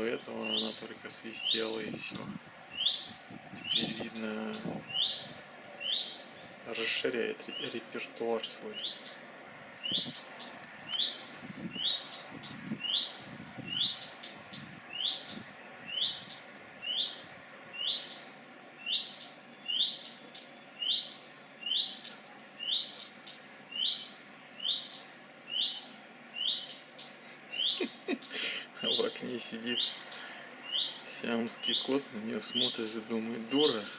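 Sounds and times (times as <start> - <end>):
bird fledgling whistling: 0.4 - 0.8, 2.8 - 6.4, 9.8 - 17.2, 17.8 - 29.0, 29.8 - 32.8.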